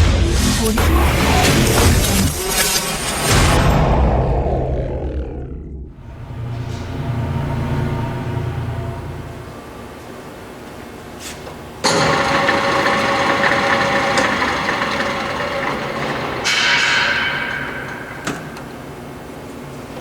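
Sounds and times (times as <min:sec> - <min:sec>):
higher machine whine: 0:00.7 - 0:11.0, 0:11.8 - 0:19.4
lathe gear whine: 0:11.8 - 0:18.7.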